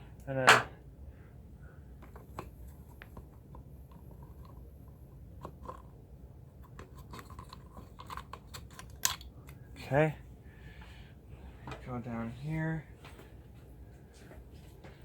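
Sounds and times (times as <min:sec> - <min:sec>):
low steady hum: 0:00.0 - 0:15.0
small parts clicking and scraping: 0:02.0 - 0:06.0, 0:06.6 - 0:09.6.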